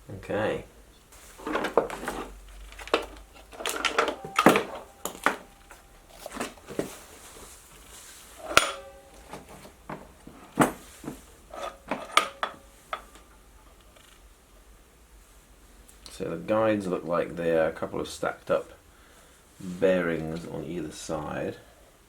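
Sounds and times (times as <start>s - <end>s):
metal parts clanking: 1.3s - 7.0s, 8.4s - 13.3s.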